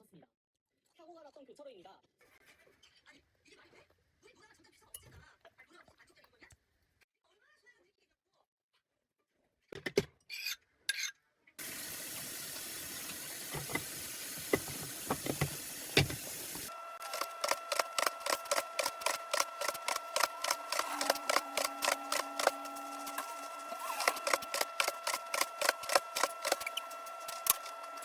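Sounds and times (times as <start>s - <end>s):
tap water running into sink: 11.6s - 16.7s
dishes knocking: 13.0s - 16.7s.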